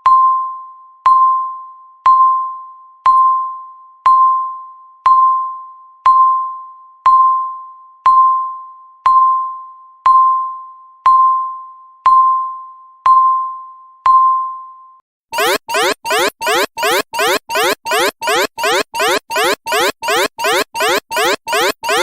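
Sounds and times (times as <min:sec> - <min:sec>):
countdown timer beeps: 0:15.4 - 0:22.0.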